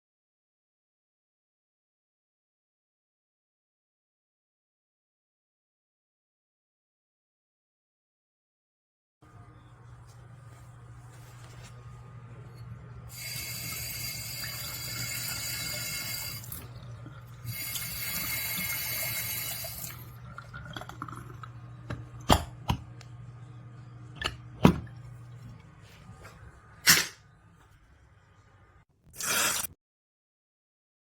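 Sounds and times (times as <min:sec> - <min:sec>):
faucet water running: 0:13.0 - 0:22.1, 0:29.2 - 0:29.7.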